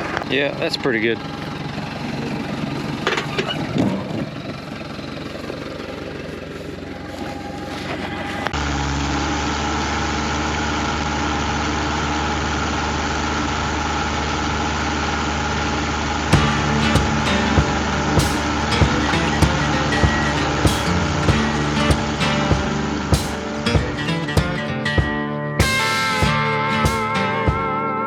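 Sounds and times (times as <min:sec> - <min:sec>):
tractor diesel engine running: 0:00.0 - 0:28.0.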